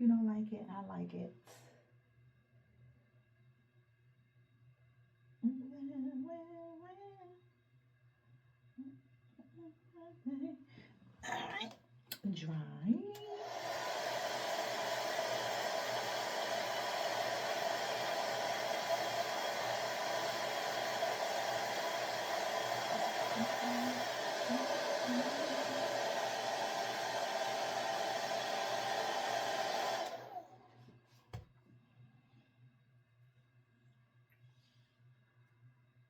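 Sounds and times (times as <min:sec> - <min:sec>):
hair dryer running: 0:13.2 - 0:30.6.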